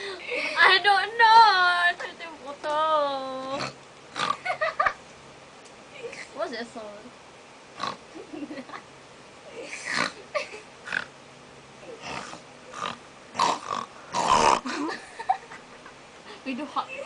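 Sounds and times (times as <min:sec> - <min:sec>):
people snorting and mock snoring: 0:03.5 - 0:04.6, 0:09.6 - 0:11.1, 0:11.9 - 0:14.9.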